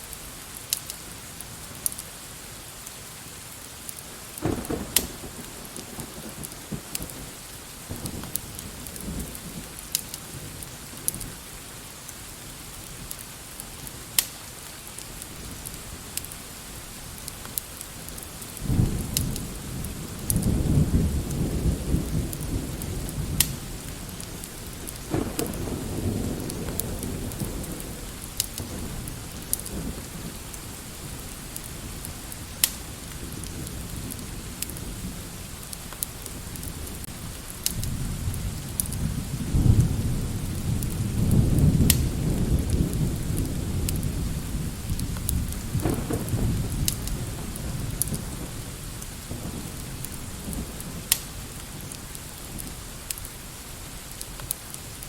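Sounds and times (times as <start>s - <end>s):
steady rain: 0.0s - 55.0s
wood fire crackling: 0.0s - 55.0s
low thunder rumble: 4.1s - 11.4s, 18.0s - 52.9s.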